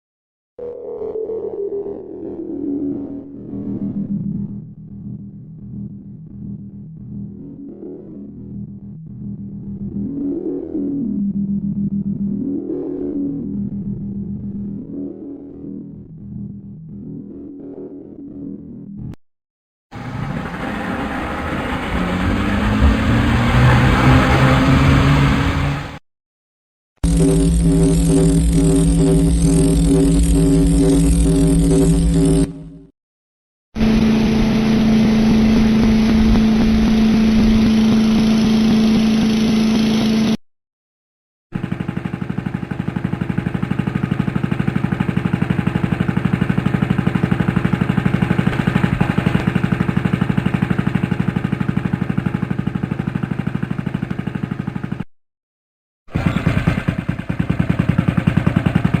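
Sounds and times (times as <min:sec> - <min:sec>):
engine with fast firing pulses: 0:19.9 - 0:26.0, 0:27.0 - 0:32.9, 0:33.8 - 0:40.4, 0:41.6 - 0:55.1, 0:56.1 - 0:59.0
engine humming steadily: 0:20.0 - 0:26.0, 0:27.0 - 0:32.9, 0:33.8 - 0:40.4, 0:41.6 - 0:55.1, 0:56.2 - 0:59.0
engine starting: 0:20.0 - 0:26.0, 0:41.6 - 0:55.0, 0:56.1 - 0:59.0.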